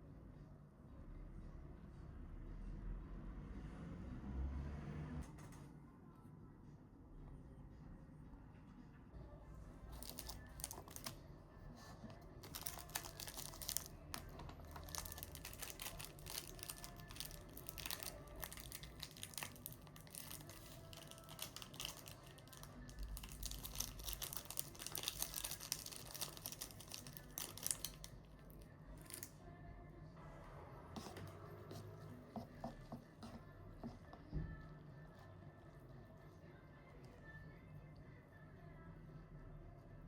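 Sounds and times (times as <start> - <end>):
packaging rustling and crinkling: 9.9 - 11.2, 11.8 - 29.3.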